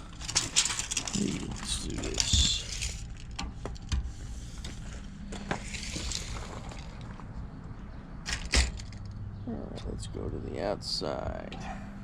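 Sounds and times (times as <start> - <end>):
knocks and handling clatter: 0.0 - 7.3, 8.2 - 9.2
low background hum: 0.0 - 12.0.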